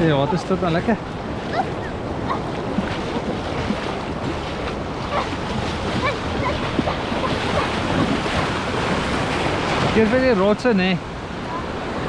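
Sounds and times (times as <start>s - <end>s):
wind noise on microphone: 0.0s - 10.4s
ocean surf washing ashore: 0.0s - 12.0s.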